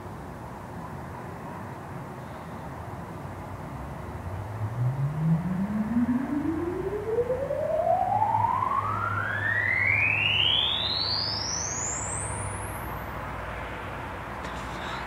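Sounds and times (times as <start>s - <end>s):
rising pure tone: 3.8s - 12.9s.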